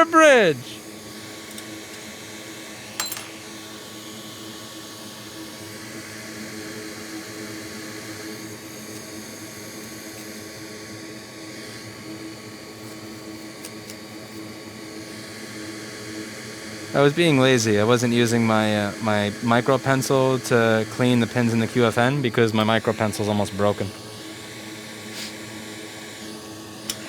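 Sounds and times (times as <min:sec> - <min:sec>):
electric fans whirring: 0:17.0 - 0:24.5.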